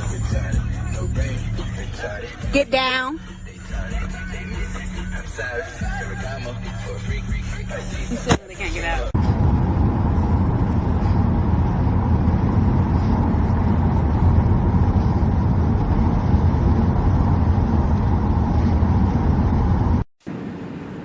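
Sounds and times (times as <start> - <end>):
car road and engine rumble: 0.0 - 21.0.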